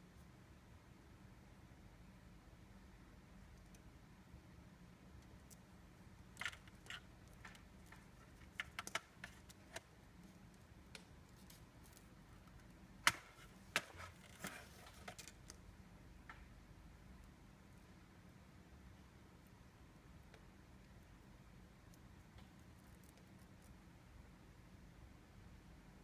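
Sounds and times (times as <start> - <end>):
faint steady hum: 0.0 - 26.0
small hard parts clicking: 6.2 - 15.6.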